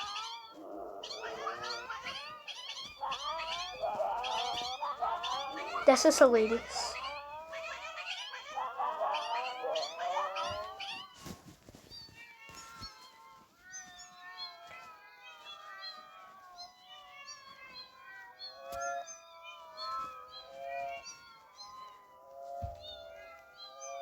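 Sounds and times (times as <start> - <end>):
recorded cat meows overlapping: 0.0 - 24.0.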